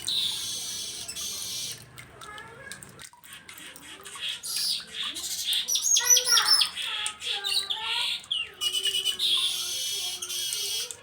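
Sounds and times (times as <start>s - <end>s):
buzzy bird chatter: 0.0s - 1.9s, 3.2s - 11.0s
bird singing high chirps: 4.5s - 10.9s.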